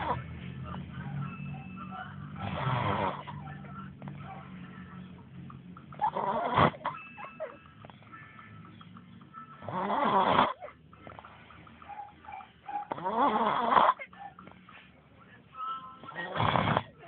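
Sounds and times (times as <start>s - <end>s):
loud snoring: 2.4s - 3.4s, 6.0s - 7.0s, 9.6s - 10.6s, 12.9s - 14.1s, 16.0s - 17.0s.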